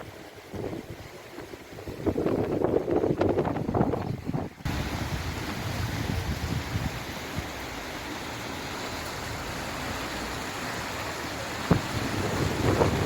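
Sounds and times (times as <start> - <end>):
river floodwater rushing: 0.0 - 13.0.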